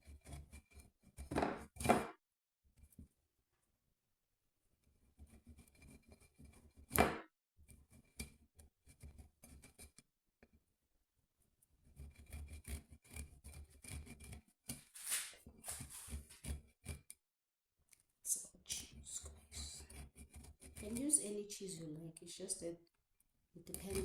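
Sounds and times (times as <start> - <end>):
knock: 7.0 - 7.2
cheese rasping on a grater: 12.0 - 17.0, 18.9 - 21.3, 23.7 - 24.0.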